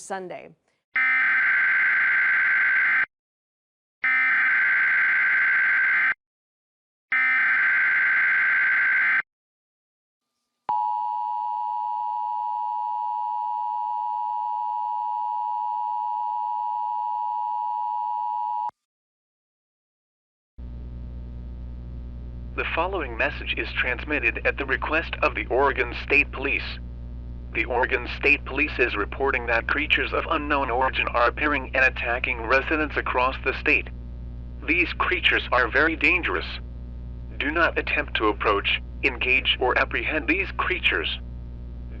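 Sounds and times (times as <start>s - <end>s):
low hum: 20.6s - 42.0s.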